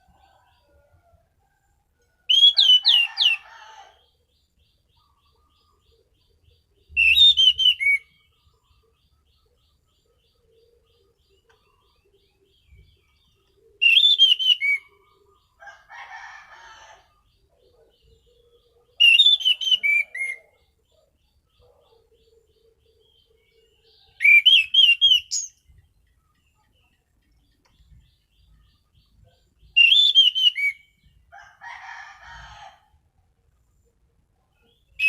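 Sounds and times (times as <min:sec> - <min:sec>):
bird singing whistled phrases: 0:02.3 - 0:03.4, 0:07.0 - 0:08.1, 0:13.8 - 0:14.9, 0:19.0 - 0:20.4, 0:24.2 - 0:25.6, 0:29.8 - 0:30.9.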